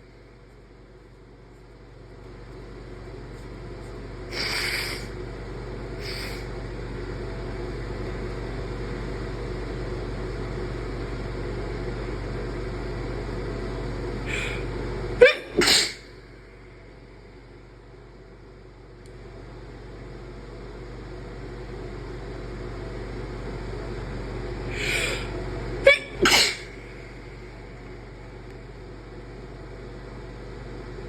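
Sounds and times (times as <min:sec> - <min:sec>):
short noisy breath bursts: 0:04.3 - 0:05.2, 0:06.0 - 0:06.5, 0:14.2 - 0:16.2, 0:24.7 - 0:27.3
person sneezing: 0:14.3 - 0:14.6, 0:15.2 - 0:16.1, 0:24.7 - 0:27.0.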